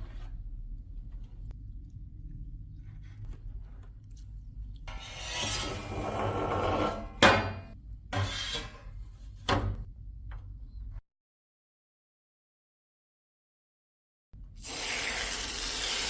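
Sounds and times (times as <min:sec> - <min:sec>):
rasping scrape: 0:04.9 - 0:09.2.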